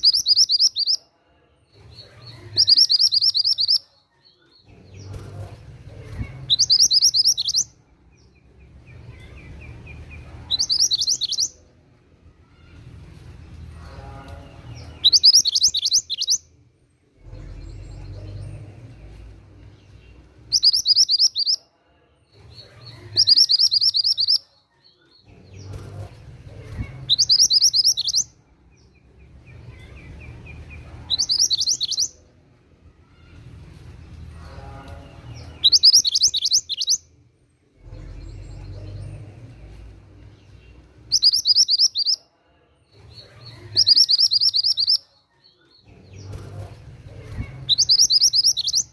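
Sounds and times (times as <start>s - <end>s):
songbird trilling: 0.0s - 1.0s, 2.5s - 3.8s, 6.5s - 7.7s, 20.5s - 21.6s, 23.2s - 24.4s, 35.6s - 37.0s, 41.1s - 42.2s, 43.7s - 45.0s, 47.7s - 48.9s
faint low background noise: 0.0s - 48.9s.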